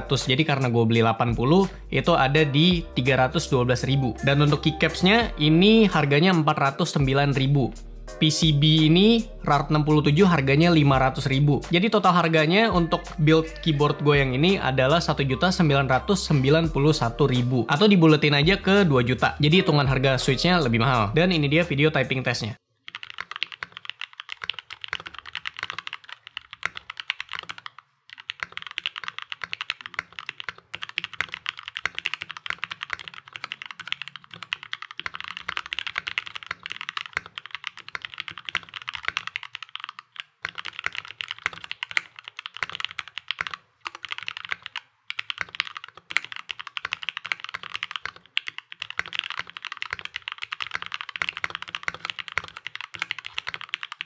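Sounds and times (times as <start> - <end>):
mechanical keyboard typing: 22.8 - 54.0.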